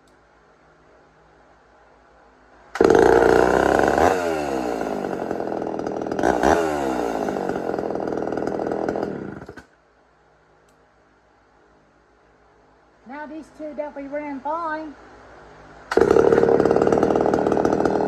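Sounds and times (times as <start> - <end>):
chainsaw revving: 2.7 - 9.7, 15.9 - 18.0.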